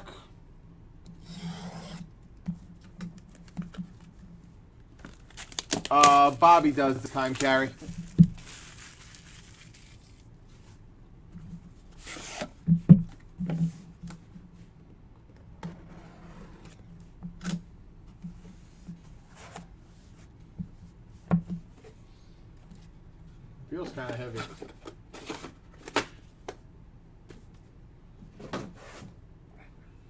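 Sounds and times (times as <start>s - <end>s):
cardboard packaging rustling: 3.1s - 4.2s, 4.8s - 10.3s
packaging tearing: 5.0s - 10.2s.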